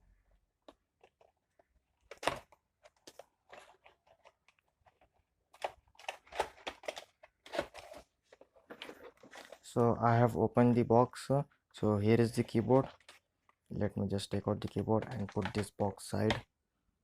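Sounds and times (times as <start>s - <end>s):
packaging rustling and scraping: 1.0s - 9.8s, 12.3s - 13.7s.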